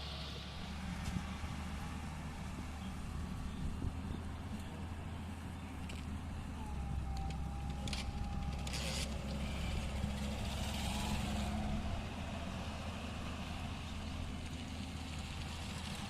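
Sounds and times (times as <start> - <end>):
excavator diesel engine running: 0.0 - 16.0.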